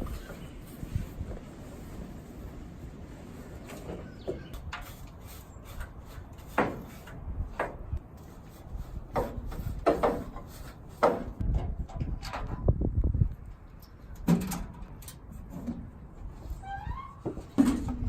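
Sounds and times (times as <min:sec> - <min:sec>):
knocks and scrapes of hard object: 0:03.7 - 0:12.6, 0:17.2 - 0:18.0.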